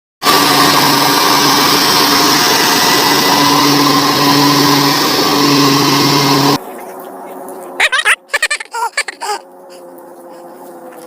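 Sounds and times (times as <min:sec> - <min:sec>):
combine harvester engine running: 0:00.2 - 0:06.6
machine whine: 0:00.2 - 0:08.0.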